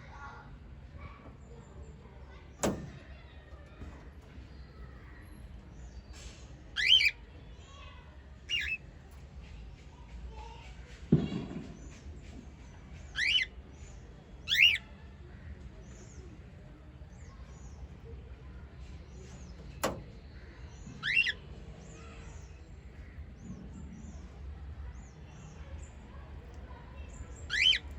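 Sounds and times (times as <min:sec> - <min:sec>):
faint high chirping: 0:01.1 - 0:09.0, 0:13.1 - 0:15.0, 0:15.8 - 0:27.9
parrot squawks: 0:06.8 - 0:07.2, 0:27.5 - 0:27.8.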